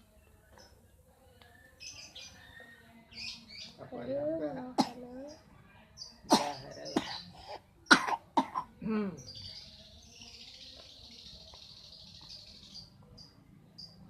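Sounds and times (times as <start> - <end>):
person coughing harshly: 4.8 - 5.0, 6.3 - 7.2.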